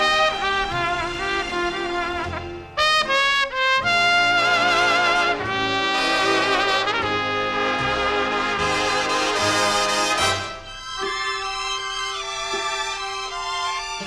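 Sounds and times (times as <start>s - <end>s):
big band instrumental with brass: 0.0s - 11.2s.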